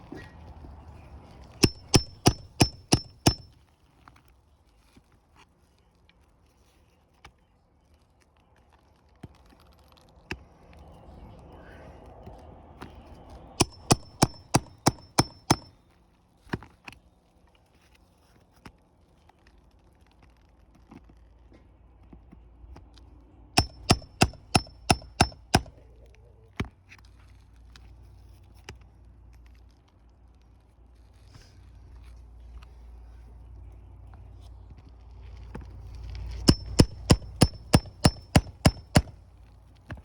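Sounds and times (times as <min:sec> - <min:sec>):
hammer ringing on steel: 0:01.6 - 0:03.5, 0:13.6 - 0:15.7, 0:23.6 - 0:25.7, 0:36.5 - 0:39.2.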